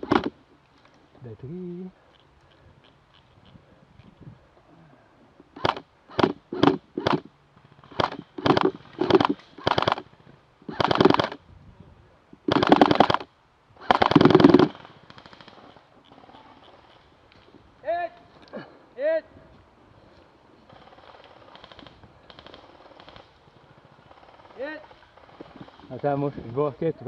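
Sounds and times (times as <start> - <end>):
airsoft gun firing bursts: 0.0 - 0.4, 5.6 - 11.4, 12.5 - 15.8.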